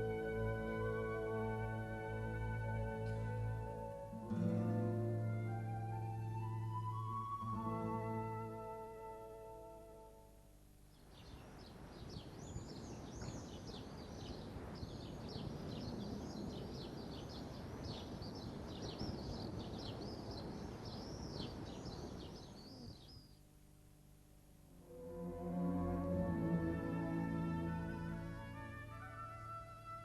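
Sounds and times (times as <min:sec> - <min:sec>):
birds chirping: 0:10.9 - 0:23.4
low ambient rumble: 0:10.9 - 0:30.0.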